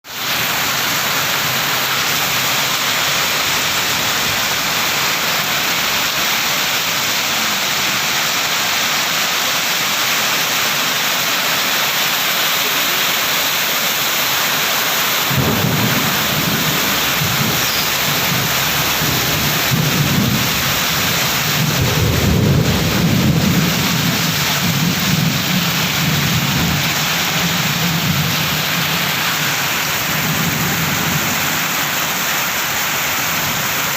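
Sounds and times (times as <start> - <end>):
heavy rain pouring: 0.0 - 33.9
deep uneven rumbling: 15.3 - 27.0.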